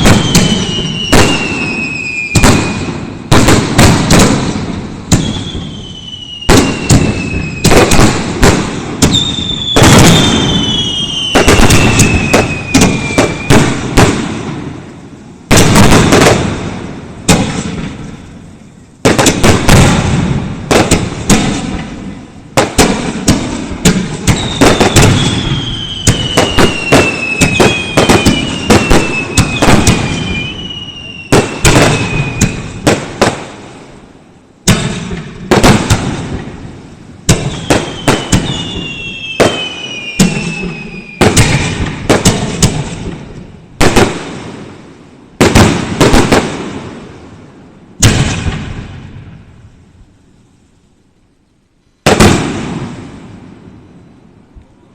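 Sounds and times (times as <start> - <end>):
falling firework whistles: 0.0 - 14.6, 22.6 - 33.5, 37.3 - 43.2
fireworks bangs and crackles: 0.0 - 50.3, 52.0 - 54.9.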